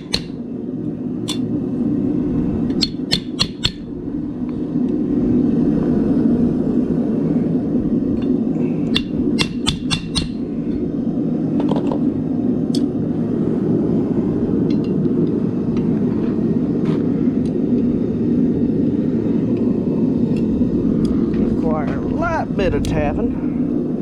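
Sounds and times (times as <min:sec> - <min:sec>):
hammer tapping steel on anvil: 0:00.0 - 0:00.4, 0:01.3 - 0:01.5, 0:02.7 - 0:03.8, 0:08.9 - 0:10.4
gas forge burner rushing: 0:00.0 - 0:24.0.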